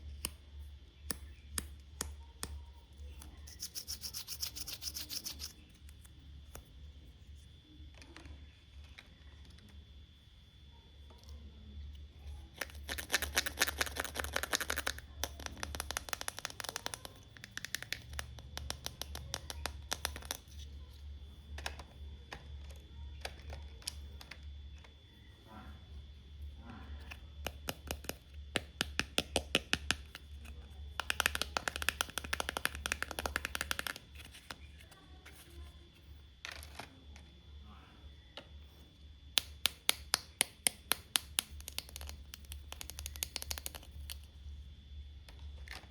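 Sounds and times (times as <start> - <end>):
low steady hum: 0.0 - 45.9
plastic toy pieces clicking: 3.5 - 5.5, 12.6 - 20.6, 31.0 - 34.5, 39.4 - 44.3.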